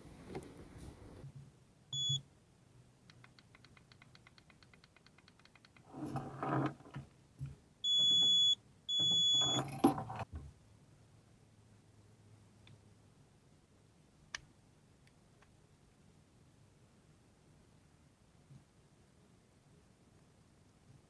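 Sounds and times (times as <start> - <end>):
faint fast ticks: 3.1 - 5.9
electronic beeps: 7.9 - 9.7
handling clatter: 9.4 - 10.3.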